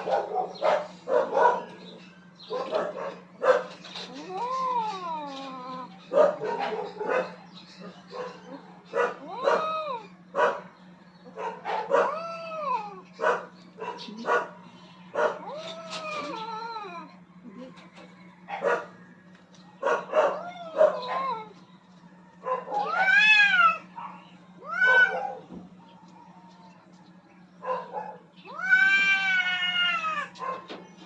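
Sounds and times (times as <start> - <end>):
cats yowling and fighting: 0.0 - 31.0
low steady hum: 0.0 - 31.0.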